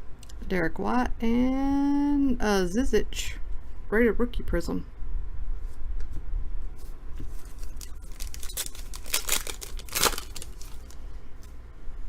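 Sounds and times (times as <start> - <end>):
wrapper crinkling: 7.4 - 11.1
foil card pack tearing: 7.5 - 11.0.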